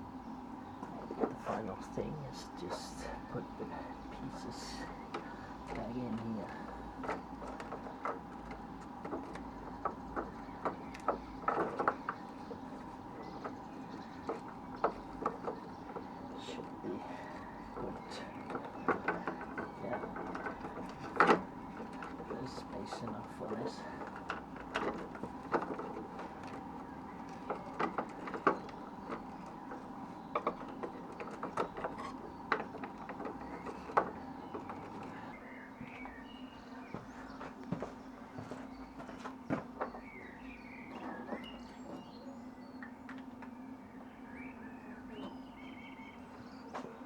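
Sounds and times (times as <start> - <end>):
faint steady hum: 0.0 - 47.0.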